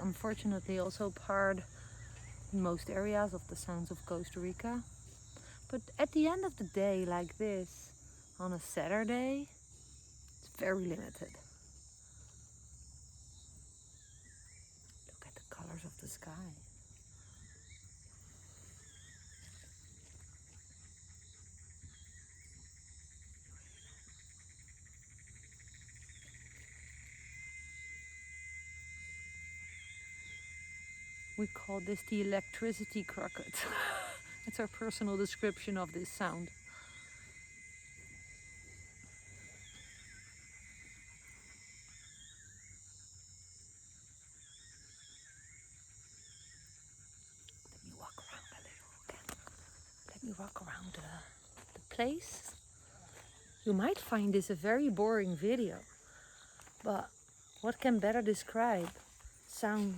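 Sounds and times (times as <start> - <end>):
cricket trill: 0.0 - 59.9
electric-sounding insect buzz: 16.8 - 57.7.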